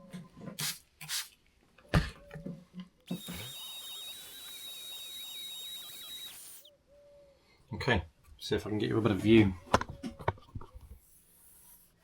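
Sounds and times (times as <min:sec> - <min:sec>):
electric sander whining: 0:03.1 - 0:06.7.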